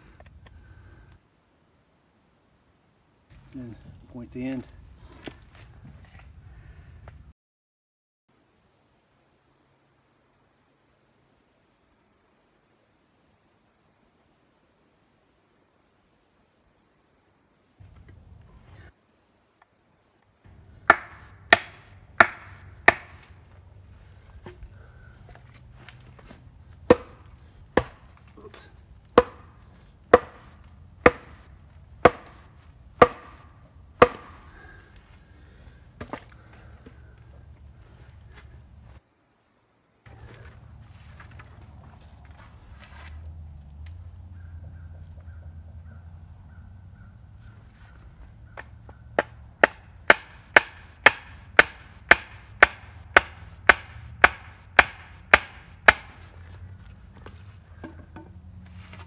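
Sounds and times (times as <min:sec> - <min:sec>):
axe chopping wood: 0:20.5 - 0:23.4, 0:25.9 - 0:34.8, 0:48.6 - 0:56.4.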